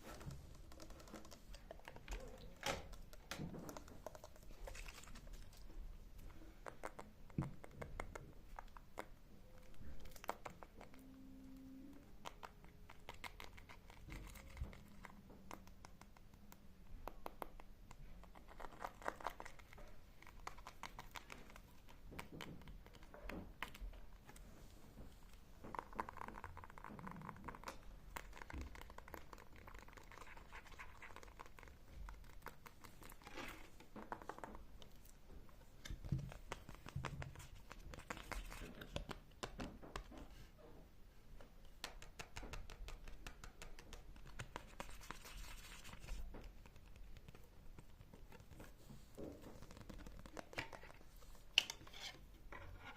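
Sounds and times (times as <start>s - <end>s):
soft scratching and crinkling: 0.0s - 52.9s.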